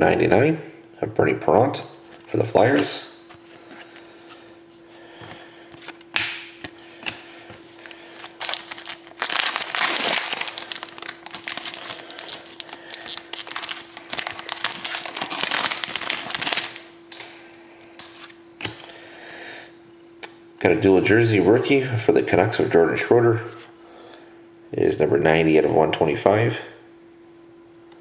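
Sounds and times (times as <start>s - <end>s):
wrapper crinkling and tearing: 7.7s - 17.2s.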